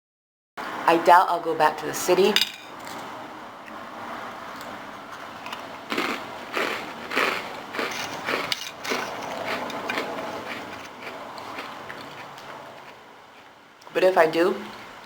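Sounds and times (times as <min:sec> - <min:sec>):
person chewing crunchy food: 0:05.4 - 0:13.6.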